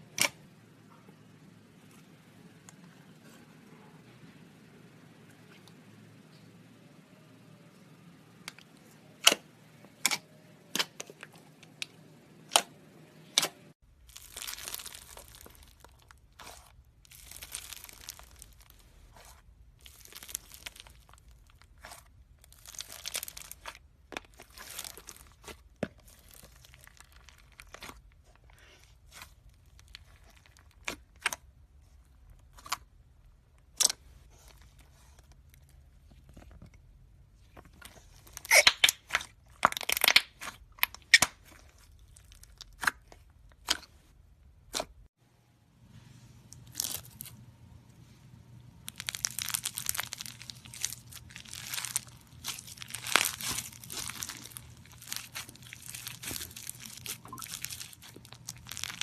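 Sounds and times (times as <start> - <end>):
slime popping and crackling: 13.4 - 18.8, 19.8 - 28.1, 37.9 - 43.9, 48.8 - 59.0.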